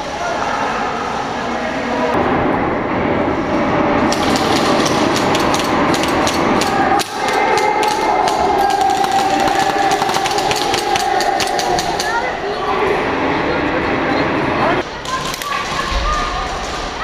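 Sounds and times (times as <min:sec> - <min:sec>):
airsoft guns firing rapid shots: 0:04.1 - 0:12.2.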